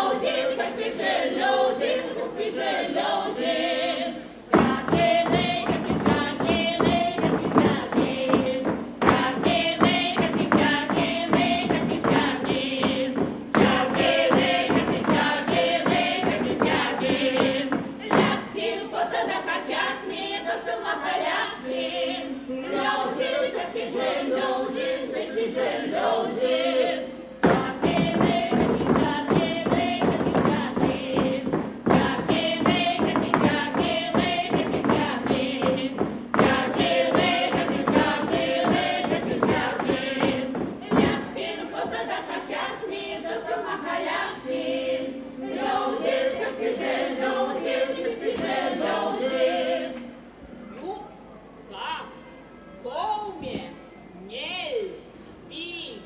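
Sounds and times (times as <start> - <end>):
folk choir singing: 0.0 - 50.4
steady beat of thumps: 4.4 - 19.4, 27.4 - 44.8.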